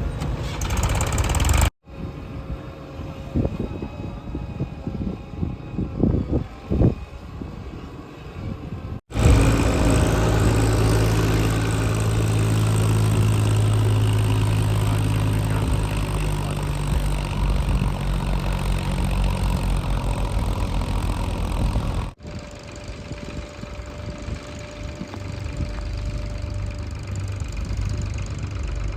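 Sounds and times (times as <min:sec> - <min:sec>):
heavy diesel engine running: 0:00.0 - 0:01.7, 0:09.1 - 0:28.9.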